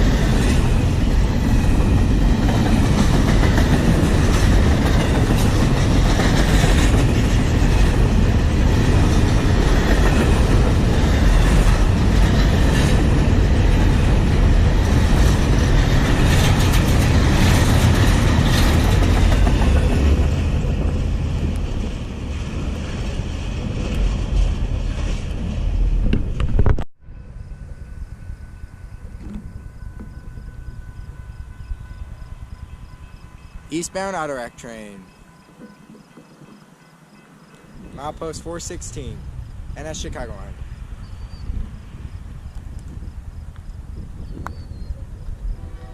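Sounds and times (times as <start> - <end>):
freight train rolling past: 0.0 - 45.9.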